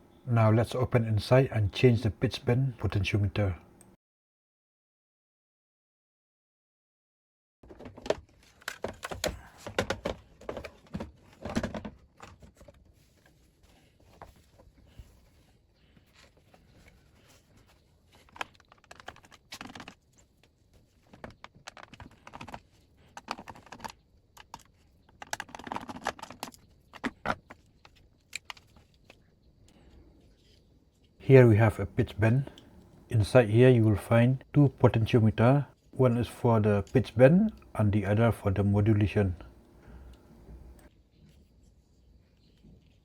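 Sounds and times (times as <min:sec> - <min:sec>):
plastic casing clicks and clatter: 0:07.7 - 0:12.8, 0:18.2 - 0:20.0, 0:21.1 - 0:29.1.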